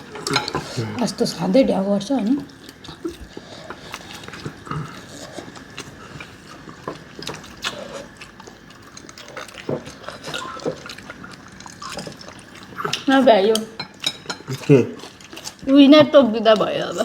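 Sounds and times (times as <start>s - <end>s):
noodles being slurped and chewed: 2.5s - 15.8s.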